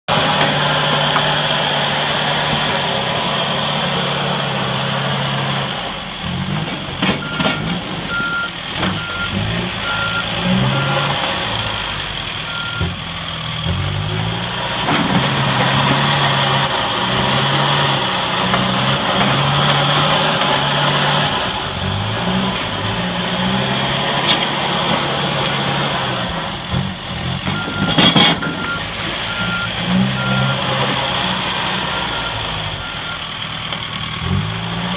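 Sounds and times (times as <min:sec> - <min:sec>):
backhoe diesel engine running: 0:00.1 - 0:34.9
reversing alarm beeps: 0:07.2 - 0:11.1, 0:12.5 - 0:12.9, 0:27.6 - 0:30.6.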